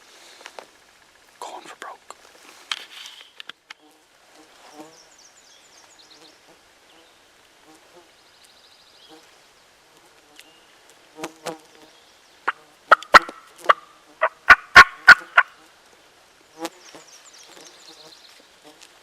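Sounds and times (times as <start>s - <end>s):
flies buzzing: 2.5s - 5.2s, 5.9s - 8.3s, 9.0s - 19.0s
turkey call clucks: 12.5s - 15.6s.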